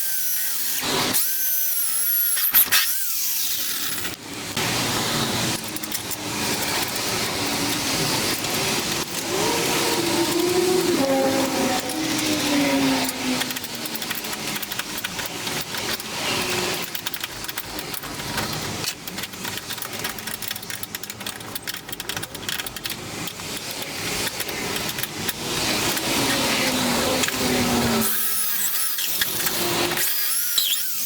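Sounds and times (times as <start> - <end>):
rapid clicks and ticks: 5.4 - 27.5
power tool scraping hiss: 23.2 - 31.0.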